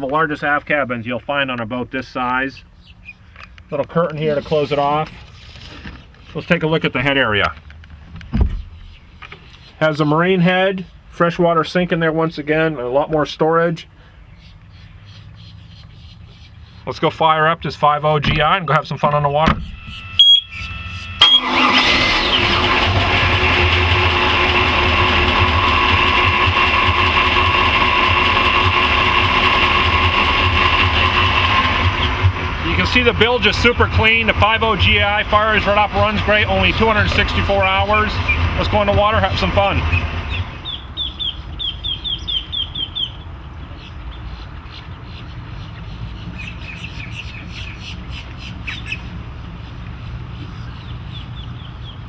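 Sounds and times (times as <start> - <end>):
bird chirping: 2.6 - 3.3, 14.3 - 16.9, 19.5 - 21.7, 31.8 - 49.8
boat engine idling: 19.6 - 40.8
steady low rumble: 22.0 - 40.8.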